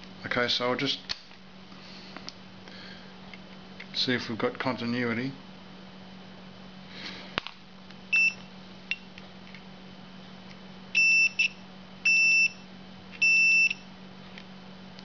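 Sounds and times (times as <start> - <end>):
multimeter beeping: 8.1 - 9.0, 11.0 - 12.6, 13.2 - 13.9.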